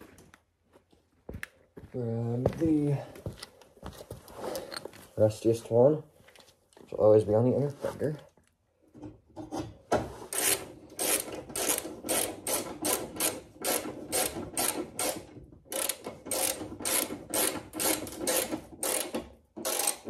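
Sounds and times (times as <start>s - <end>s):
ratchet wrench strokes: 10.3s - 20.0s.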